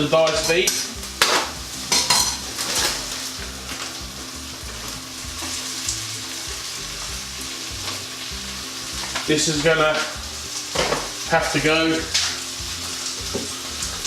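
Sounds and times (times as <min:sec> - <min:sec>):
meat sizzling in a pot: 0:00.0 - 0:14.0.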